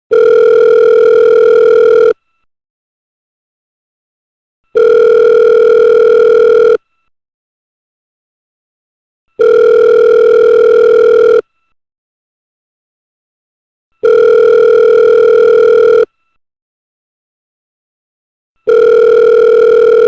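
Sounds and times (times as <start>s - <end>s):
telephone ringing tone: 0.1s - 2.2s, 4.7s - 6.8s, 9.4s - 11.4s, 14.0s - 16.1s, 18.6s - 20.0s.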